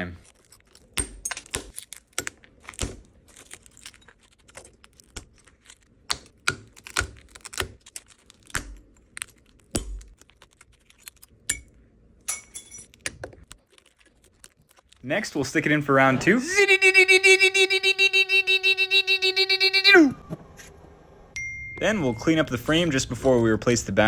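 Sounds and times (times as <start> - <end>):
tools chipping glass: 0.3 - 5.5.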